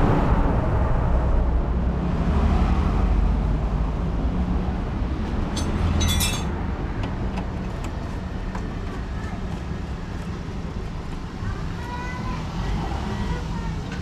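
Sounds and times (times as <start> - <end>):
metal clinks: 5.5 - 6.5.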